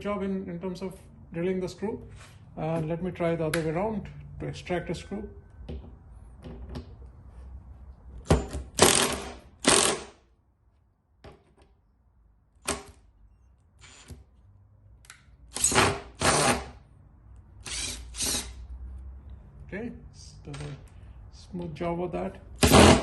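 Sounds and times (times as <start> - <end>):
impact driver rattling: 22.6 - 23.0.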